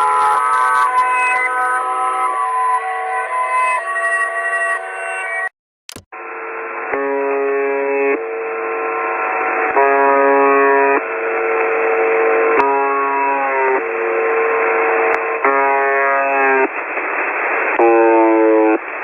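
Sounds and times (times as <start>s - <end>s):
emergency alarm tones: 0.0s - 5.5s
loud static hiss: 6.2s - 19.0s.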